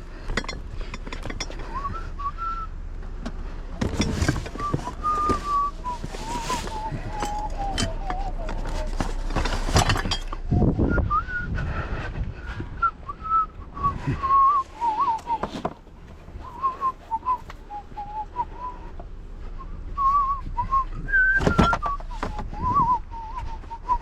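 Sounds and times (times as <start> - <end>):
person whistling a tune: 1.7 - 2.7, 4.6 - 8.5, 10.5 - 11.7, 12.5 - 15.4, 16.4 - 18.9, 19.6 - 24.0
knocks and clatters of items: 3.2 - 10.4, 21.3 - 22.5.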